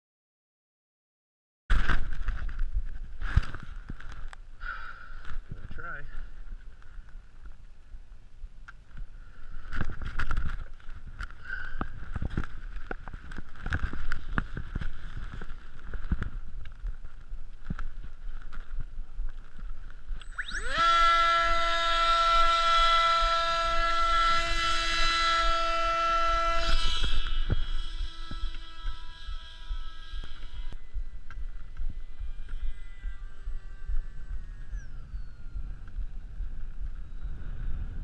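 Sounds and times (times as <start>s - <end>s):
wind buffeting microphone: 5.4s - 38.0s
electric motor and propeller whine: 9.4s - 38.0s.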